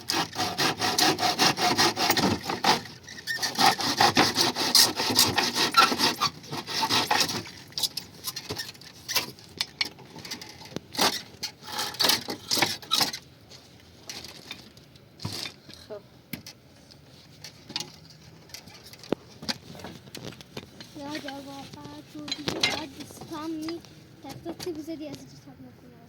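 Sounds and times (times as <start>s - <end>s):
hand saw cutting wood: 0.0s - 8.0s.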